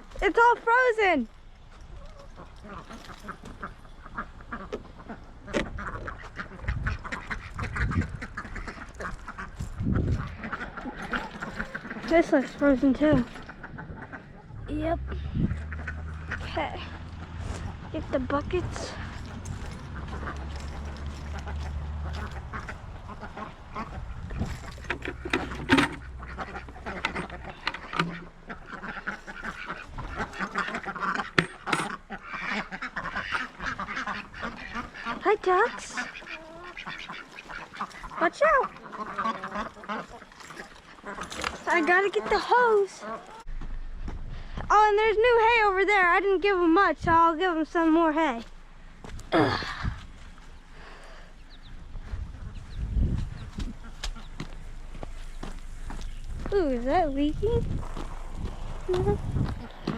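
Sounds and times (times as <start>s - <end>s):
ducks quacking: 0.0s - 1.2s, 1.9s - 43.7s, 45.4s - 59.9s
low bumps: 3.4s - 32.2s, 43.3s - 59.9s.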